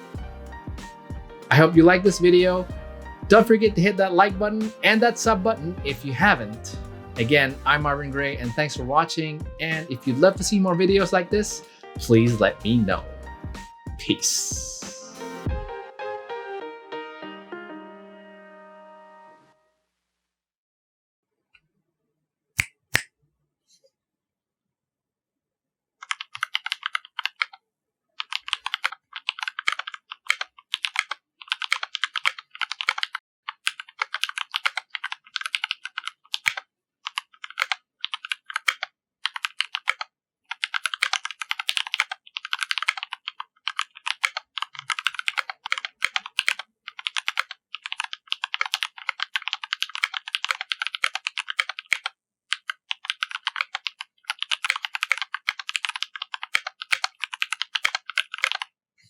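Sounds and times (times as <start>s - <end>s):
typing on mechanical keyboard: 26.0s - 27.6s, 28.2s - 58.7s.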